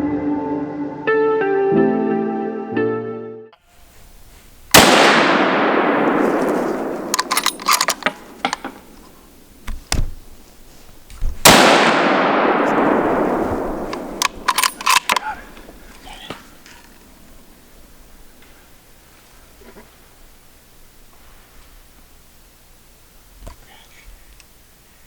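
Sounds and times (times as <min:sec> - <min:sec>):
rifle shots with echo: 0:04.7 - 0:09.6, 0:11.4 - 0:16.6
sharp metallic clicks: 0:04.8 - 0:09.8, 0:11.5 - 0:17.1.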